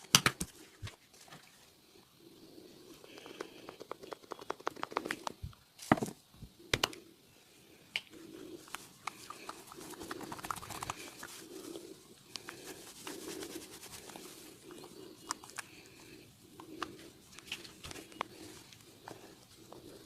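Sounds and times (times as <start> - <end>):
sharp taps and clicks: 3.2 - 5.4.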